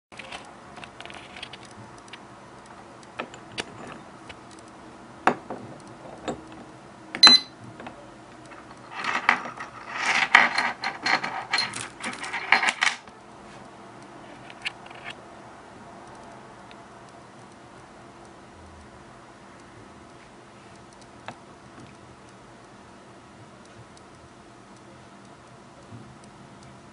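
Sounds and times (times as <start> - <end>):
keys and padlock rattling: 8.5 - 13.0.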